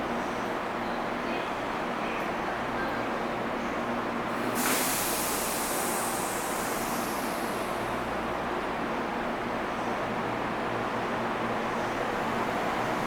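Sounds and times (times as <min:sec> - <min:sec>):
train and station noise: 0:00.0 - 0:13.0
compressed air hiss: 0:04.4 - 0:07.9.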